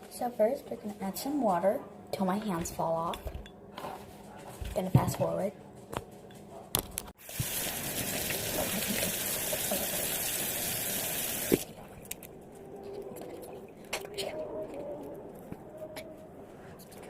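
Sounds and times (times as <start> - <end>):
water gushing: 7.2 - 11.8.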